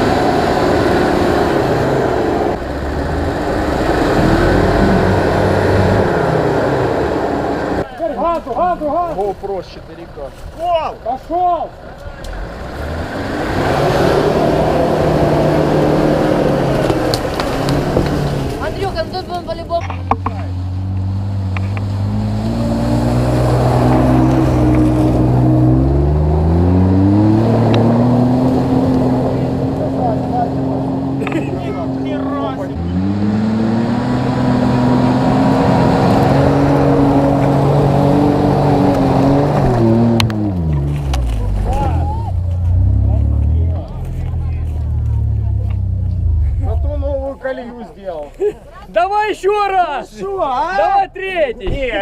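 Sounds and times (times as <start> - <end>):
engine revving at high revs: 0.0 - 7.8, 12.4 - 18.5, 20.8 - 40.8.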